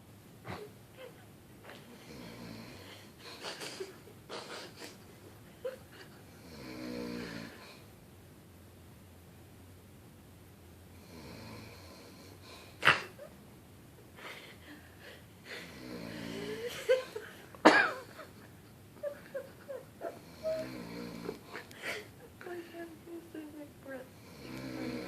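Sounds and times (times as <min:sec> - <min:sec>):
woman snoring: 0:01.8 - 0:03.2, 0:05.7 - 0:07.8, 0:11.0 - 0:12.7, 0:15.5 - 0:17.2, 0:20.0 - 0:25.0.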